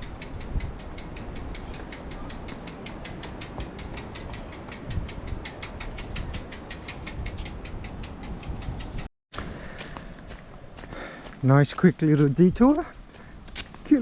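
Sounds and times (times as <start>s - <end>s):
fast steady ticking: 0.0s - 9.1s
wind buffeting microphone: 0.0s - 14.0s.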